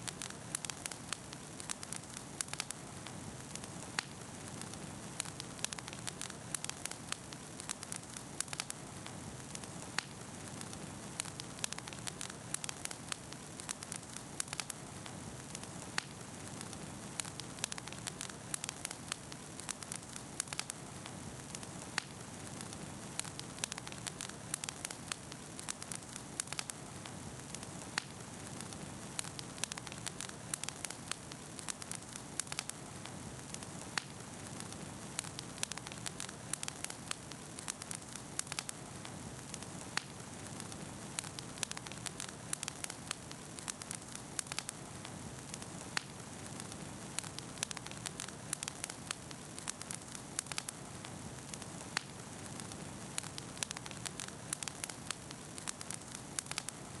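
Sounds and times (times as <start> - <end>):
burning wood crackling and popping: 0.0 - 57.0
campfire flame rushing: 0.2 - 56.7.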